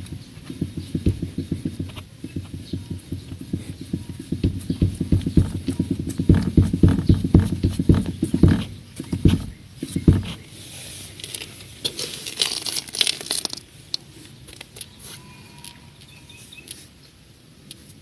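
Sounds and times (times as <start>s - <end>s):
suspension strut knocking: 0.0s - 10.4s
rustling and crinkling: 0.0s - 17.0s.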